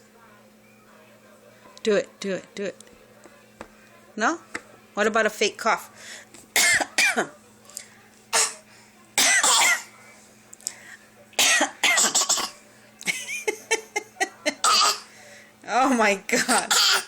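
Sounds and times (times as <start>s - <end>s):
child coughing: 6.6s - 7.3s, 8.3s - 8.6s, 9.2s - 9.9s, 11.4s - 12.6s, 14.6s - 15.1s, 16.4s - 17.0s.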